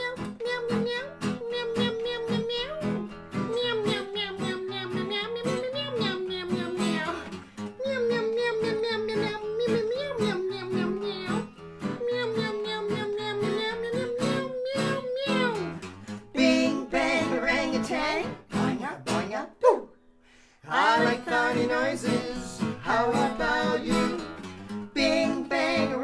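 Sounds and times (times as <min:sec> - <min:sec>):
man imitating cat meows: 0:00.0 - 0:07.2, 0:07.8 - 0:15.8
strummed acoustic guitar: 0:00.0 - 0:19.4, 0:20.6 - 0:26.0.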